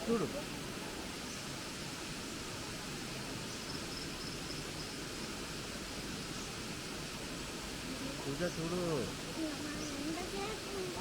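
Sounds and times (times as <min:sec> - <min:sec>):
waterfall rushing: 0:00.0 - 0:03.5, 0:05.0 - 0:11.0.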